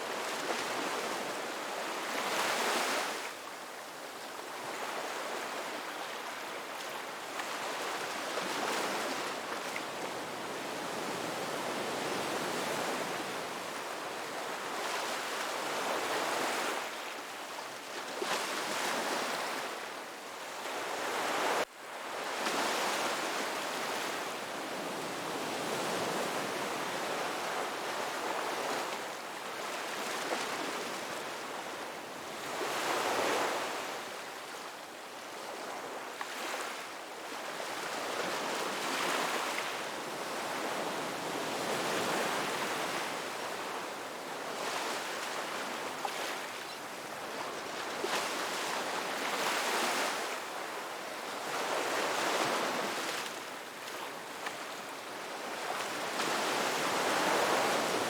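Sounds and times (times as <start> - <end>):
waves breaking on beach: 37.8 - 58.0.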